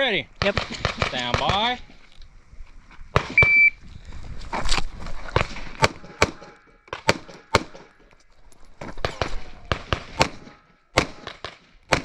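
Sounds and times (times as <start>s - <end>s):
airsoft pistol shots: 5.8s - 7.9s, 9.0s - 12.0s.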